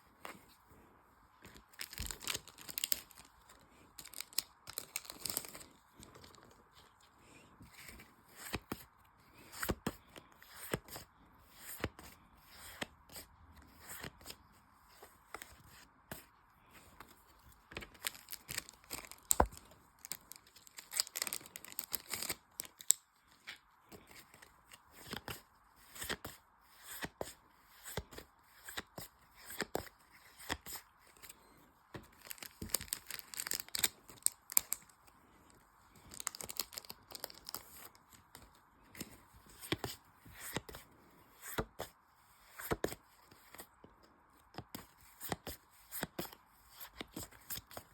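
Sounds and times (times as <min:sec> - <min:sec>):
cards rustling and snapping: 0:01.4 - 0:06.9, 0:17.0 - 0:27.1, 0:27.8 - 0:35.0, 0:35.9 - 0:40.8
foil wrappers tearing and crinkling: 0:01.8 - 0:03.3.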